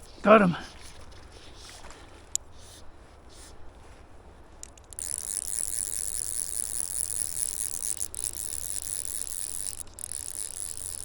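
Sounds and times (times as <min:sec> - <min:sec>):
fishing reel drag ratcheting: 0:04.6 - 0:11.0.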